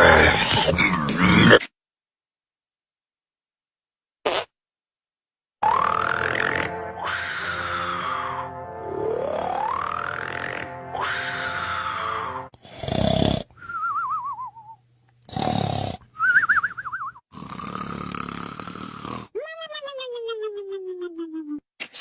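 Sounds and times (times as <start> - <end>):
comic snoring with whistle: 5.6 - 6.8, 8.8 - 10.8, 12.1 - 14.7, 15.3 - 16.5, 17.2 - 19.3.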